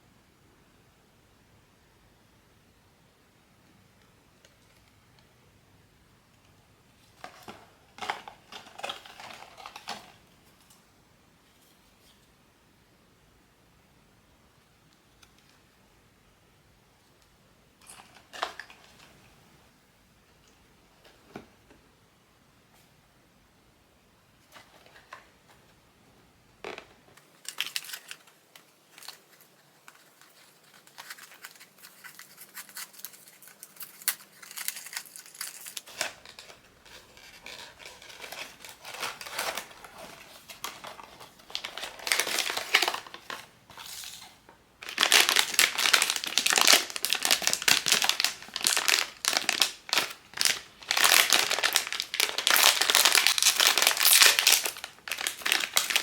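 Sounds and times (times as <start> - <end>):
plastic wrapping crinkling: 7.1 - 10.2, 26.7 - 56.0.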